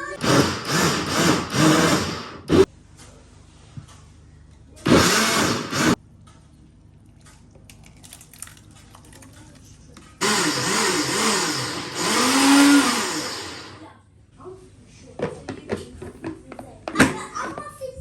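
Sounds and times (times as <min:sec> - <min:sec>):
electric blender running: 0:00.0 - 0:02.7, 0:04.9 - 0:06.0, 0:10.2 - 0:13.9.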